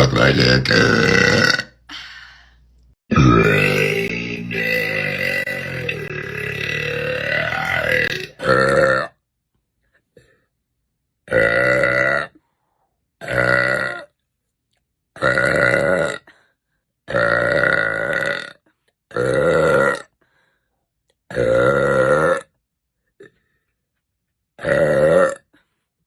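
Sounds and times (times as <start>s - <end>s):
girl belching: 0.4s - 1.9s, 3.1s - 9.2s, 13.2s - 14.1s, 15.2s - 16.2s, 17.1s - 20.1s, 21.3s - 22.5s, 24.6s - 25.5s.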